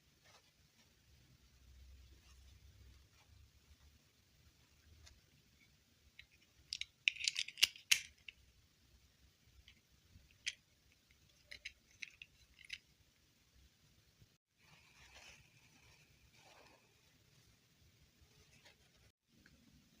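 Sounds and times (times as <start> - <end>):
small object clicks and rustles: 6.2 - 8.4, 9.6 - 12.9.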